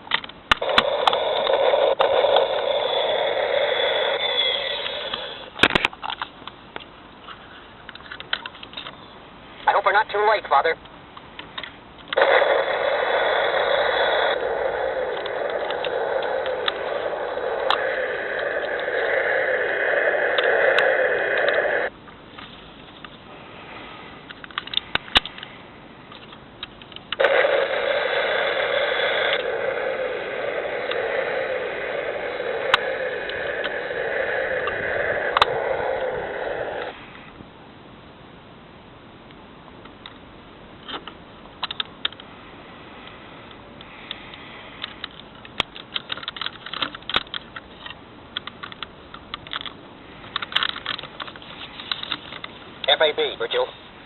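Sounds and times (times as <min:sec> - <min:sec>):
toy rocket engine sound effect: 0:00.6 - 0:05.6, 0:12.2 - 0:21.9, 0:27.2 - 0:37.1.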